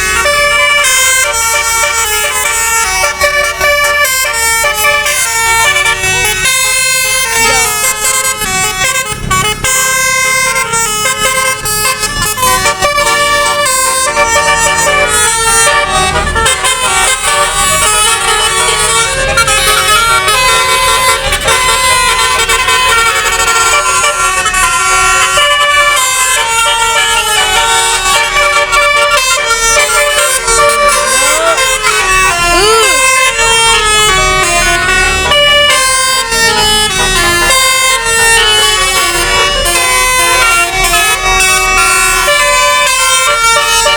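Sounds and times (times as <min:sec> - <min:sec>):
multi-tone air horns playing melody: 0:00.0 - 0:43.9.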